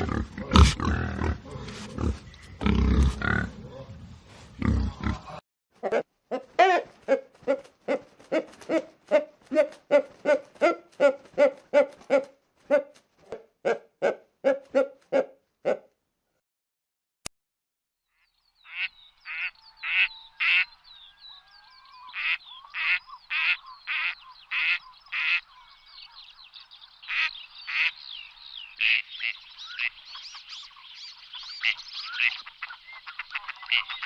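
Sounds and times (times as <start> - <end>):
waterfowl flock calling: 18.7 - 26.2, 27.0 - 34.0.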